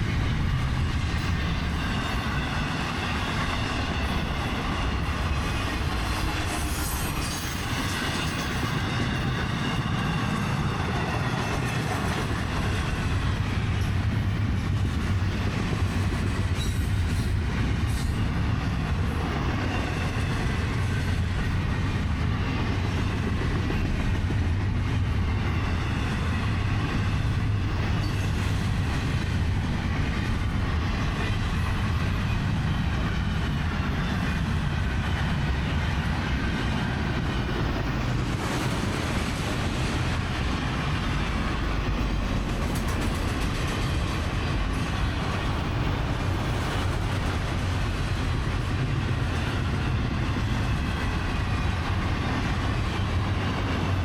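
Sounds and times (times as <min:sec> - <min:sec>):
train wheels rumbling on rail: 0:00.0 - 0:54.0.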